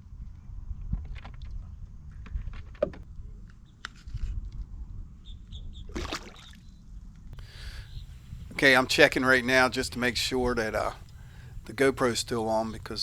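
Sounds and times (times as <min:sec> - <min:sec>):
steady low rumble: 0:06.8 - 0:13.0.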